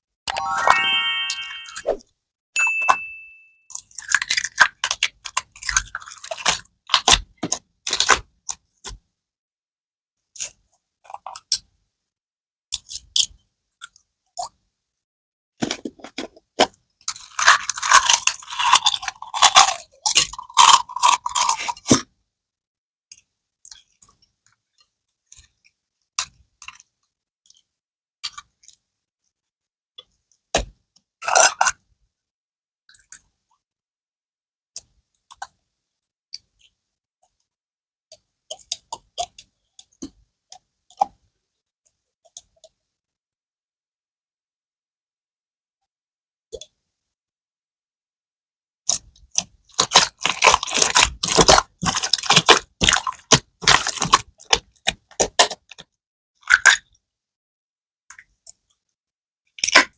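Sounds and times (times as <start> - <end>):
slime crackling and popping: 49.4 - 55.6.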